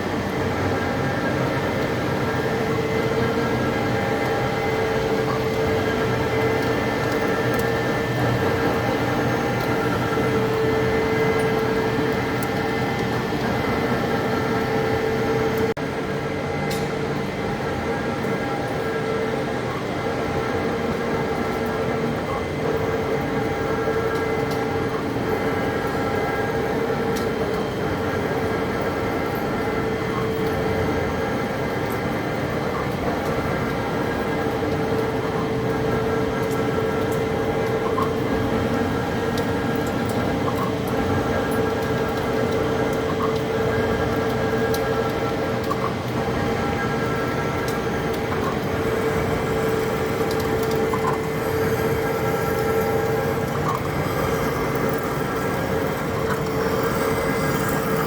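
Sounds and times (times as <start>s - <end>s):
lathe droning: 45.4s - 58.0s.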